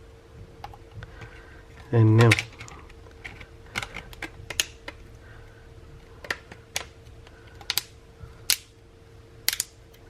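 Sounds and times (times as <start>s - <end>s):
faint steady hum: 0.0s - 10.0s
plastic parts clicking and tapping: 0.6s - 5.0s, 6.2s - 7.0s.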